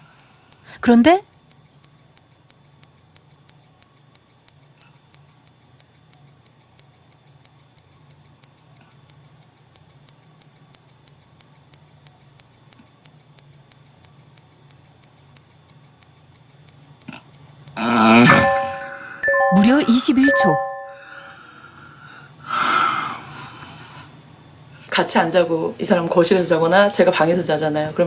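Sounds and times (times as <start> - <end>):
rapid clock ticking: 0.0 - 20.9.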